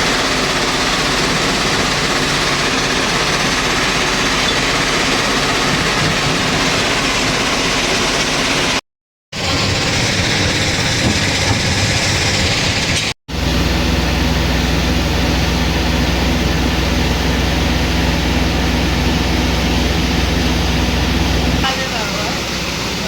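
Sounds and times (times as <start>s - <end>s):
heavy machinery running: 0.0s - 23.0s
diesel engine humming: 9.4s - 23.0s.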